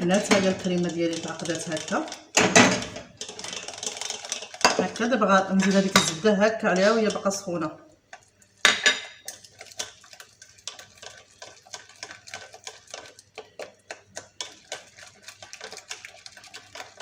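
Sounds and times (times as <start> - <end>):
utensil clattering against saucepan: 0.0 - 7.4, 8.1 - 17.0
utensil tapping and scraping pan: 0.0 - 7.5, 8.1 - 17.0.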